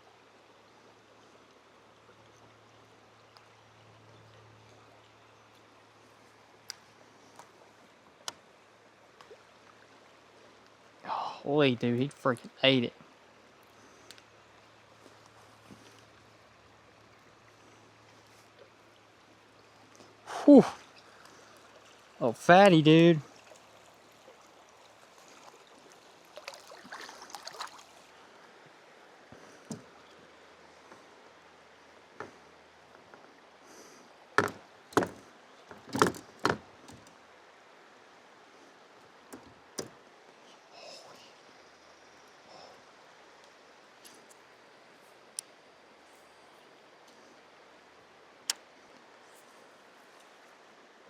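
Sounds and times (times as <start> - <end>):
river water rushing: 12.7 - 40.4
water splashing and dripping: 19.8 - 28.1
light sharp clicks: 48.4 - 49.1.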